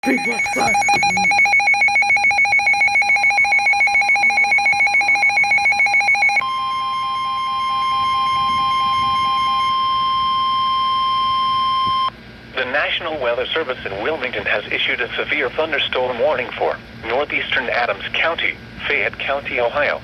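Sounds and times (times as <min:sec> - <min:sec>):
two-tone electronic beeping: 0:00.0 - 0:09.9
slow beeps: 0:00.0 - 0:10.0
weather radio alarm tone: 0:00.0 - 0:11.4.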